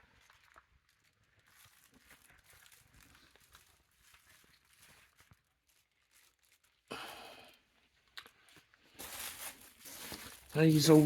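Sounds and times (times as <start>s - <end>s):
faint rustling: 8.4s - 11.0s.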